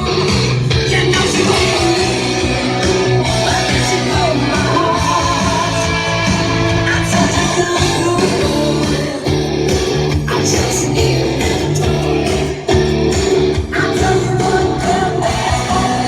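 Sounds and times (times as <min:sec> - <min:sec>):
rock song with guitar and singing: 0:00.0 - 0:16.0.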